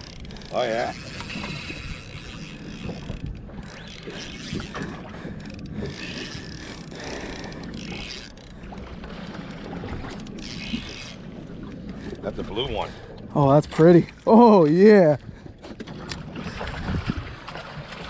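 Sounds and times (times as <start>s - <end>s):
water: 0.0s - 18.0s
wind on microphone: 16.3s - 17.6s.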